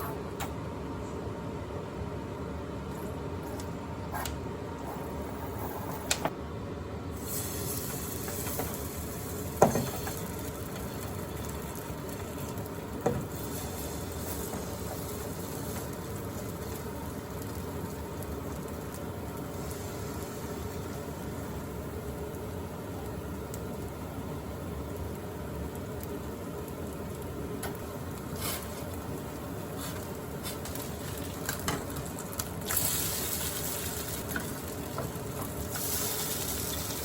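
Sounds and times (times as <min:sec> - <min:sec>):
steady hiss: 0:07.1 - 0:24.0.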